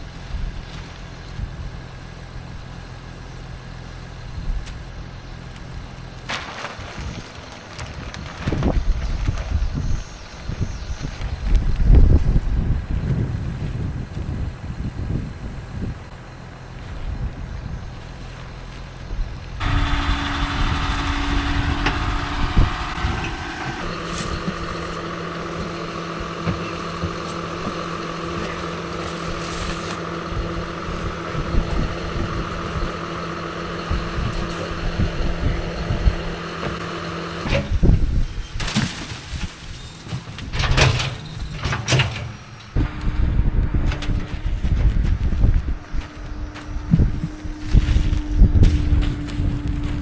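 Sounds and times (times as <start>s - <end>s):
tractor engine running: 0.0s - 50.0s
knocks and rumbling: 18.9s - 50.0s.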